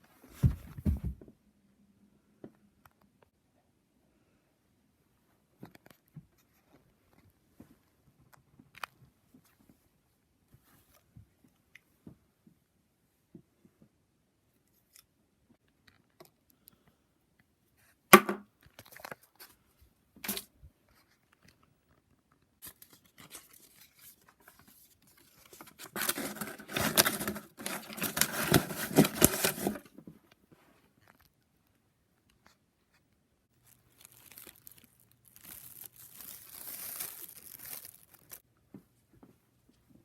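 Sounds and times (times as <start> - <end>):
crackling and rustling: 20.3 - 38.5.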